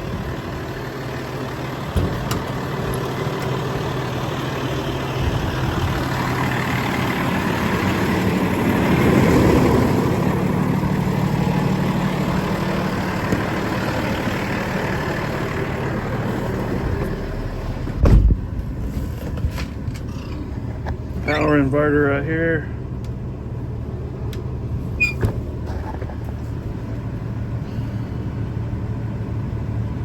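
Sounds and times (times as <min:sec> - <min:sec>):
engine running: 0:00.0 - 0:30.0
heavy thump: 0:18.0 - 0:18.5.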